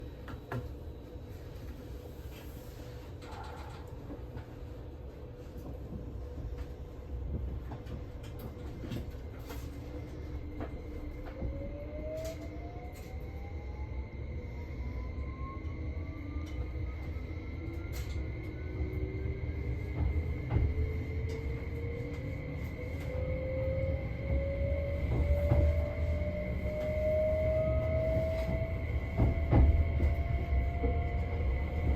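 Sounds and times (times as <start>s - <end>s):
train running rumble: 0.0s - 31.9s
train clicks: 5.6s - 11.6s, 28.0s - 31.2s.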